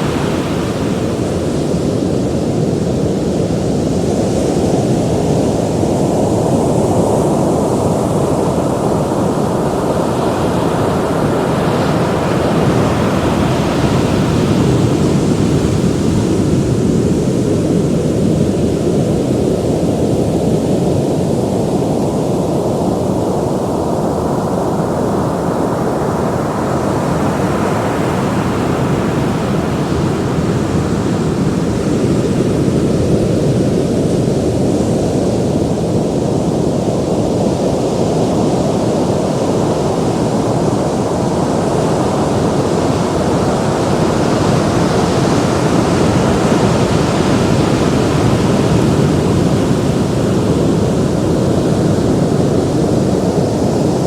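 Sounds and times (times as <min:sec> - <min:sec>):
waves breaking and washing in: 0:00.0 - 0:54.0.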